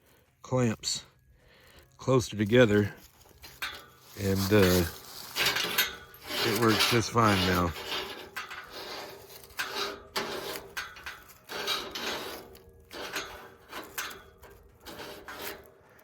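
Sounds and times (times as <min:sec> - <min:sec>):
metal rod scraping and knocking: 0:03.4 - 0:16.0.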